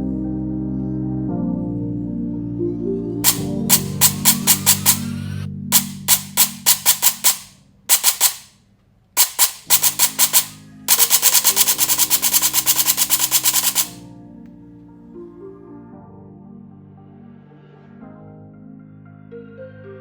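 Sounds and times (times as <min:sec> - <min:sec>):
gel blaster firing: 0:03.2 - 0:08.5, 0:09.2 - 0:14.0.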